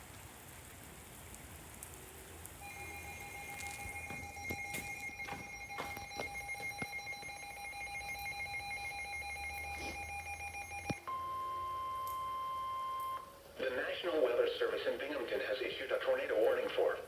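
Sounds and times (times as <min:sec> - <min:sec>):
rain: 0:00.0 - 0:17.0
shrill electronic alert alarm: 0:02.6 - 0:13.3.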